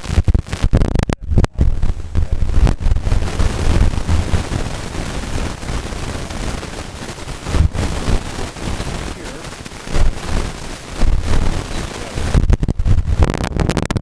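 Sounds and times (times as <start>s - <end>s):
low rumble and crackling: 0.0s - 14.0s.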